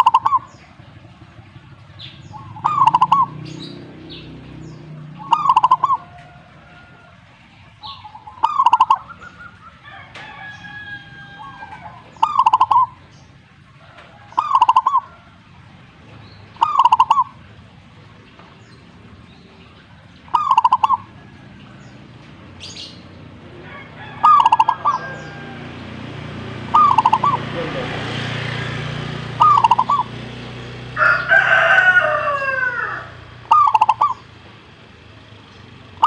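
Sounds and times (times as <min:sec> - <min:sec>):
dove clicking and cooing: 0:00.0 - 0:36.0
high chirps: 0:02.0 - 0:06.0, 0:07.8 - 0:09.7, 0:11.4 - 0:13.2, 0:14.4 - 0:15.1, 0:16.5 - 0:17.4, 0:20.3 - 0:21.1, 0:26.7 - 0:27.6, 0:29.4 - 0:30.2, 0:33.4 - 0:34.3.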